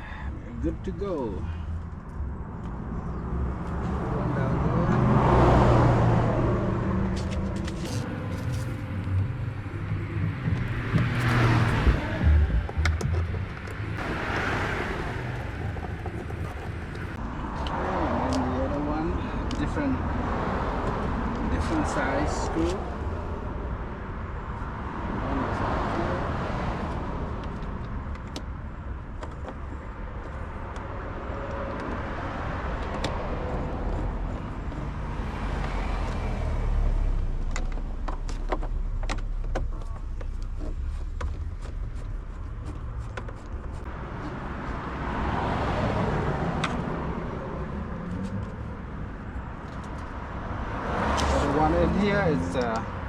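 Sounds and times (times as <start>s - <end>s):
car passing: 0.0s - 28.1s, 29.7s - 53.0s
road traffic rumble: 0.0s - 53.0s.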